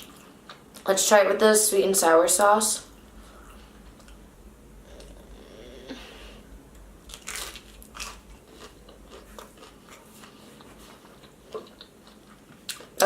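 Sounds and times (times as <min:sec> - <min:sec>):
person crunching and chewing food: 0:07.0 - 0:13.0.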